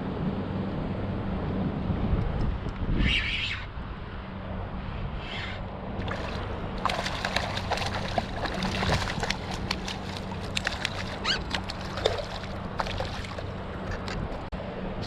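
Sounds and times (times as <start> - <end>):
water splashing around kayak: 6.0 - 14.5.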